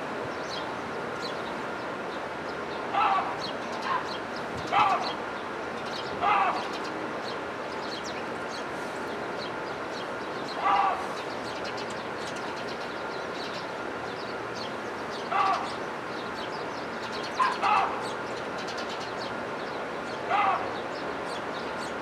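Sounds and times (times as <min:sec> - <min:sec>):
small birds chirping: 0:00.3 - 0:22.0
louder lower bird call: 0:06.2 - 0:06.9, 0:15.2 - 0:15.8, 0:20.2 - 0:21.0.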